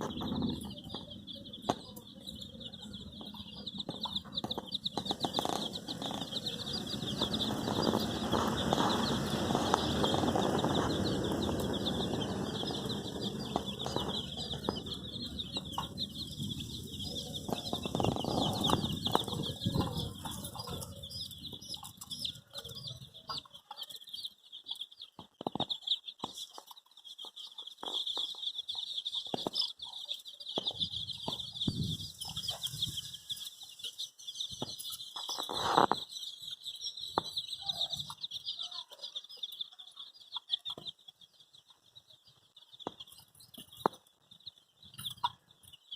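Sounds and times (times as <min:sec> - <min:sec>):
baby chicks peeping: 0:00.0 - 0:45.9
scuffling and wing flutter: 0:04.4 - 0:16.0.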